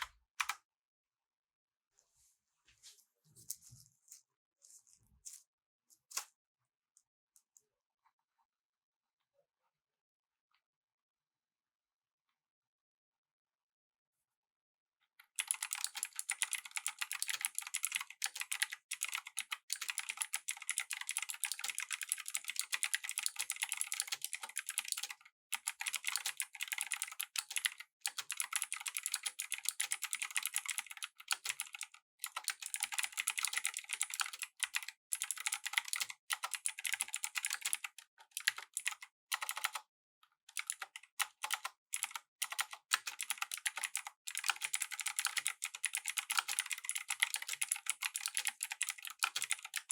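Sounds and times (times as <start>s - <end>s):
mechanical keyboard typing: 15.3s - 39.8s, 40.5s - 49.9s.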